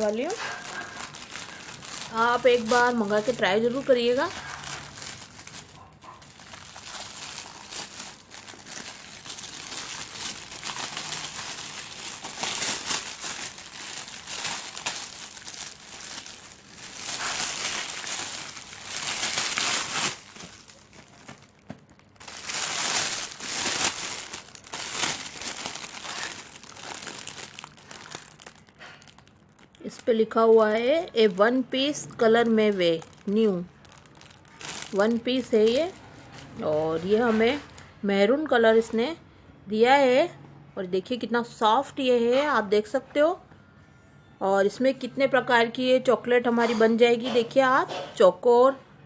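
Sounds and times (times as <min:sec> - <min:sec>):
plastic bag crinkling: 0:00.0 - 0:37.9.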